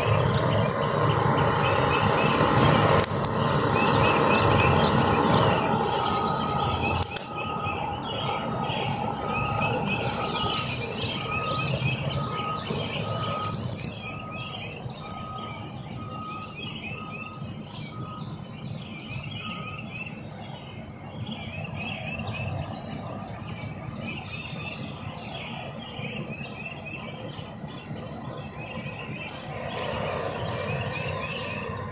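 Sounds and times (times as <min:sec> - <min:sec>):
low rumble: 0:00.0 - 0:17.1
steady high beep: 0:00.0 - 0:18.4
small birds chirping: 0:00.0 - 0:31.9.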